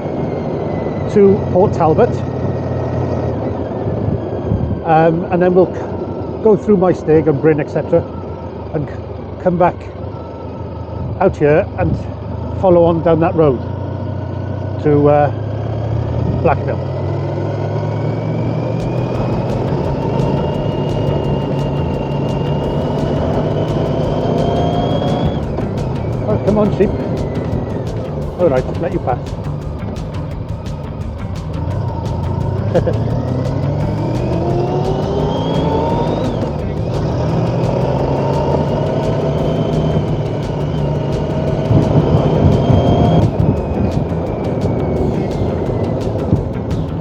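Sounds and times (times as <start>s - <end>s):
wind and road noise: 0.0s - 47.0s
motorcycle engine running: 18.7s - 47.0s.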